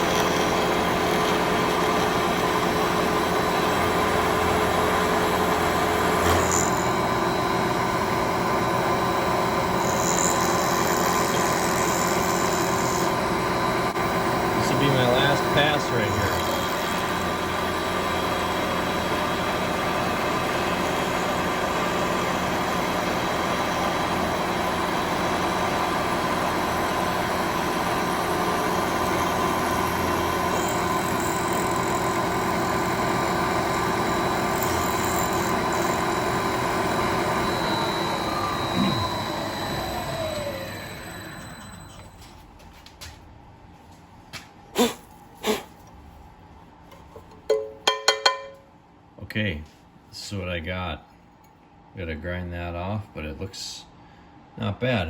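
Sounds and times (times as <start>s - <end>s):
milling machine cutting metal: 0.0s - 42.2s
spindle motor spinning down: 0.0s - 42.2s.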